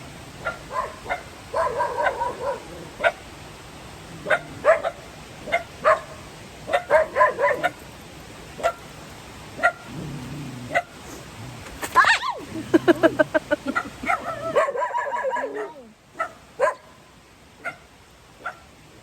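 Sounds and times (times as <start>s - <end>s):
dog barking: 0.4s - 3.2s, 4.2s - 7.8s, 8.6s - 8.8s, 9.6s - 9.9s, 10.7s - 10.9s, 13.7s - 17.0s, 17.6s - 17.8s, 18.4s - 18.6s.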